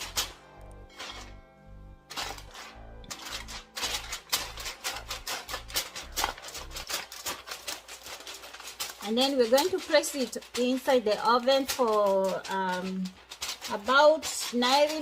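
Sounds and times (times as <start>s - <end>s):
background music with low beat: 0.0s - 7.5s
aluminium foil crinkling: 0.0s - 15.0s.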